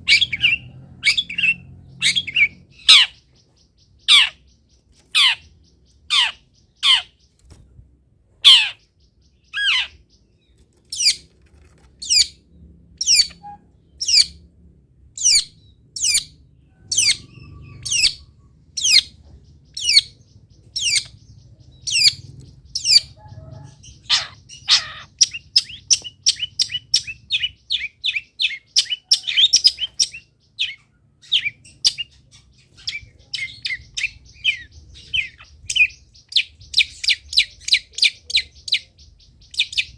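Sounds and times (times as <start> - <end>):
shrike sharp calls: 24.0 - 25.1.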